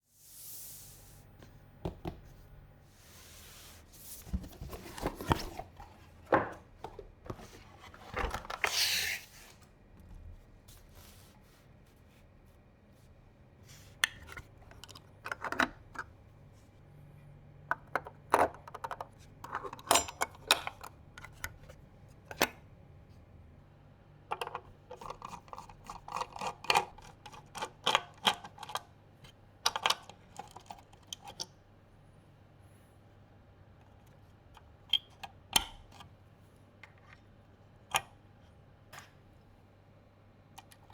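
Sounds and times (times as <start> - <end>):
hands knocking and tapping parts: 1.8 - 2.4
plastic and metal computer parts clicking: 29.7 - 31.5.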